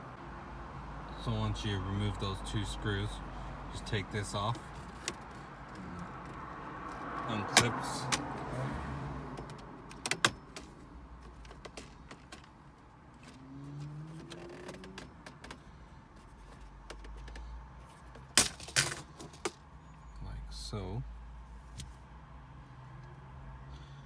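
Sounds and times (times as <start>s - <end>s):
plastic handling rustle: 4.4s - 8.6s, 9.4s - 19.6s.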